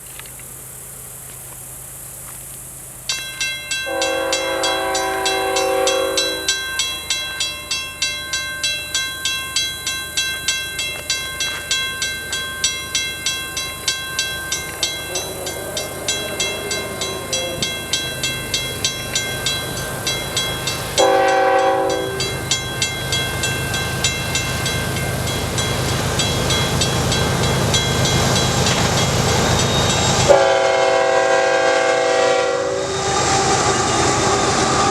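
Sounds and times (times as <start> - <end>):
low rumble of train: 0.0 - 34.9
railway crossing bell ringing: 2.9 - 34.9
locomotive air horn blasts: 3.8 - 6.8, 21.0 - 22.5, 30.3 - 34.8.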